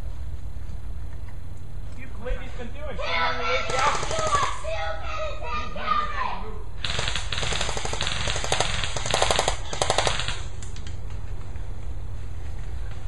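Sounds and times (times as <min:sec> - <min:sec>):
airsoft guns firing bursts: 0:03.4 - 0:04.7, 0:06.8 - 0:10.9.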